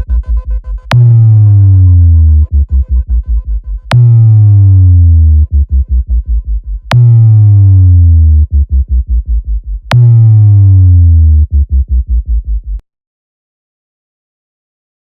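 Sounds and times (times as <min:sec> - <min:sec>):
electronic dance music with heavy bass: 0:00.0 - 0:11.9.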